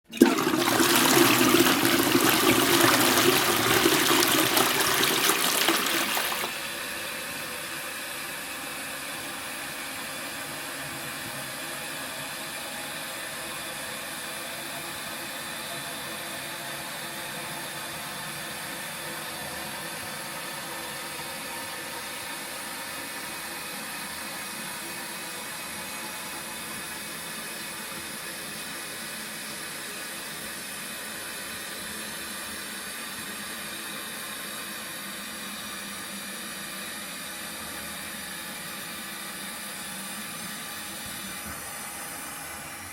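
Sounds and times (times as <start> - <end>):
toilet flushing: 0.1 - 7.0.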